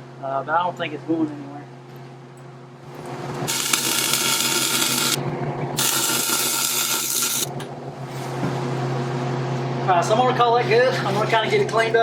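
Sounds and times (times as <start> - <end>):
steady low hum: 0.0 - 12.0
welding arc noise bursts: 2.9 - 5.2, 5.8 - 7.5.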